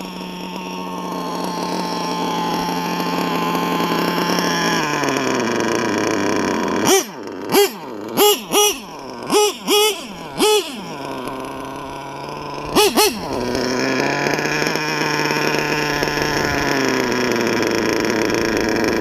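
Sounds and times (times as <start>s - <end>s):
nitro engine revving: 0.0s - 19.0s.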